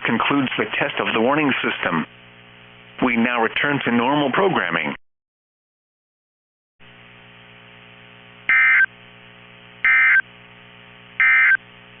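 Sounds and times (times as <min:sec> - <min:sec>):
steady low hum: 0:00.0 - 0:03.8, 0:06.8 - 0:12.0
digital data tone bursts: 0:08.5 - 0:08.9, 0:09.8 - 0:10.2, 0:11.2 - 0:11.6.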